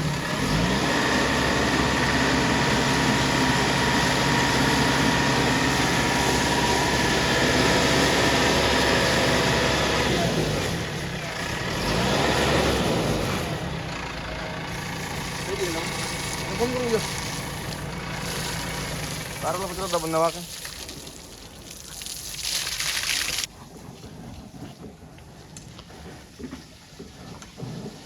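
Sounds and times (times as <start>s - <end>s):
heavy diesel engine running: 0.0s - 20.4s.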